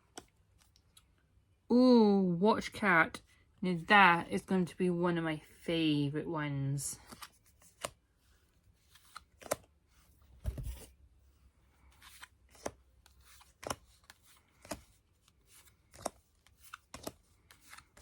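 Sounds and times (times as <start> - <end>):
cards clicking and sliding: 7.0 - 8.0, 8.8 - 9.7, 11.8 - 18.0.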